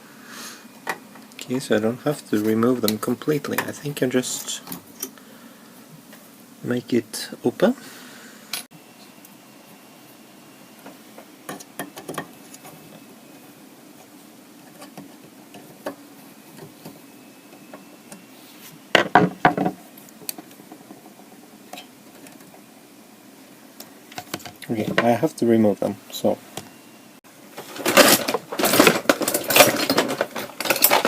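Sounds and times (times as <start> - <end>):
clicks and knocks of hard parts: 27.6 - 31.0.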